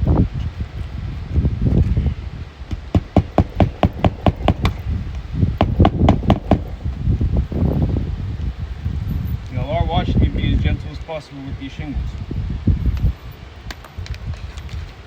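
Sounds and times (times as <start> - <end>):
wind rumble on microphone: 0.0 - 15.0
sharp clicks and taps on shingles: 2.7 - 7.1, 13.7 - 15.0.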